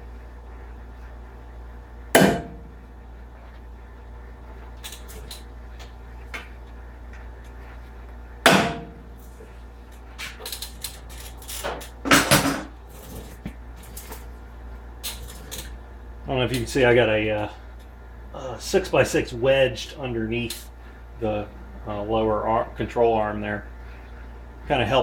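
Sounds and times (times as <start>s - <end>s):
hammer striking steel: 2.2s - 2.8s, 8.5s - 9.0s.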